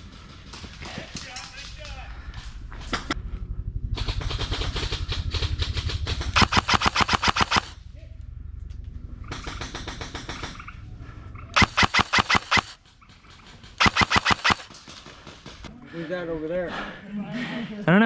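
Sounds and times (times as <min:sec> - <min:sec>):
airsoft guns firing bursts: 0:06.4 - 0:07.8, 0:11.6 - 0:12.8, 0:13.6 - 0:15.7.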